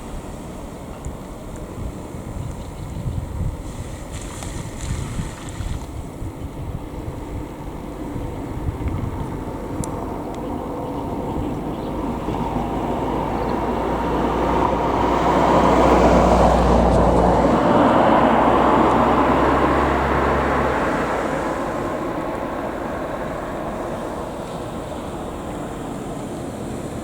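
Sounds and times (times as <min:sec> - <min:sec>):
vehicle passing by: 0:09.3 - 0:27.0.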